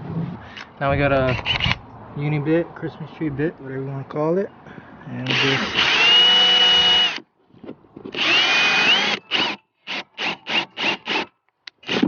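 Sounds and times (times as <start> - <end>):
power drill drilling metal: 5.3 - 7.2, 8.1 - 12.0.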